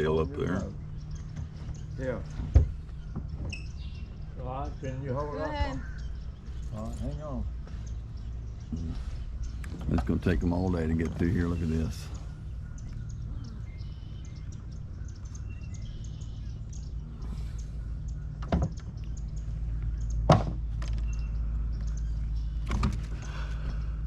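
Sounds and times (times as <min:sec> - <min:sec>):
electric trolling motor humming: 0:00.0 - 0:24.0
sharp knocks: 0:20.2 - 0:20.6.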